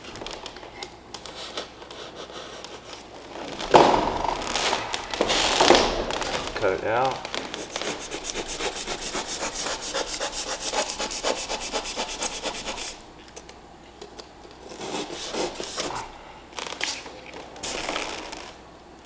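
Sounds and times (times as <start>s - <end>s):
foam scraping and crinkling: 3.4s - 9.6s
saw cutting foam board: 7.5s - 13.0s, 14.8s - 16.0s.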